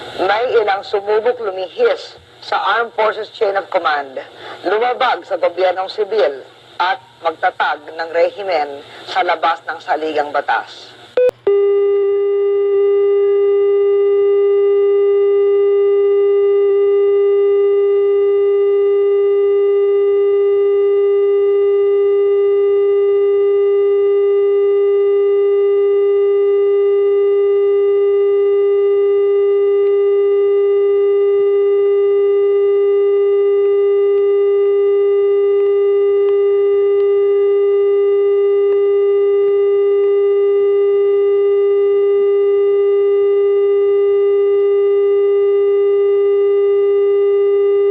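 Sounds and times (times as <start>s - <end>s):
emergency broadcast tone: 11.2s - 47.9s.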